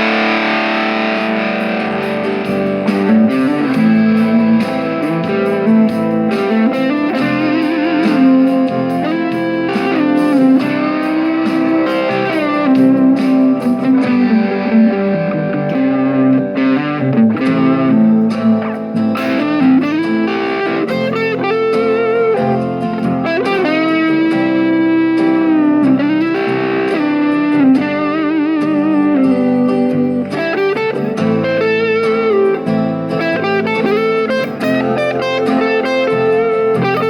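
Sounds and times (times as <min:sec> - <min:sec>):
electric guitar lead line: 0:00.0 - 0:37.0.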